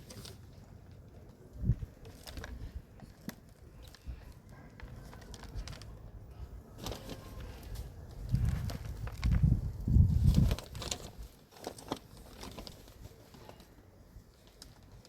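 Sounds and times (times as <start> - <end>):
compost rustling and crackling: 0.0 - 15.0.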